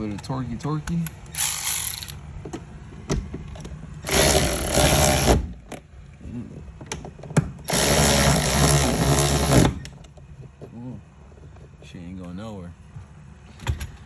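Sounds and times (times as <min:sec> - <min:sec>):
power driver tightening bolt: 0:01.1 - 0:02.2.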